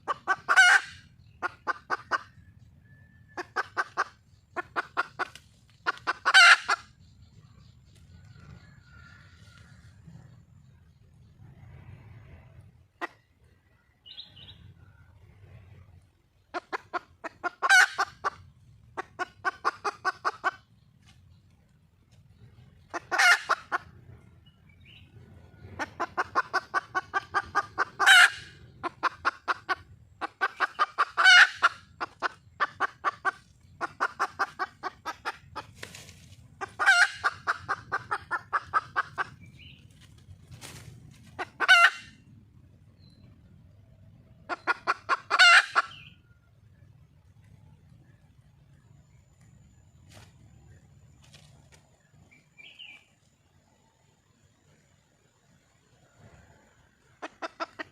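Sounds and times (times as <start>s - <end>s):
hen cackling: 0.0s - 10.4s, 11.6s - 14.6s, 16.5s - 20.8s, 22.8s - 24.4s, 25.0s - 35.8s, 36.5s - 39.7s, 41.2s - 42.6s, 44.2s - 46.3s, 56.0s - 57.9s
faint low hum: 0.0s - 57.9s.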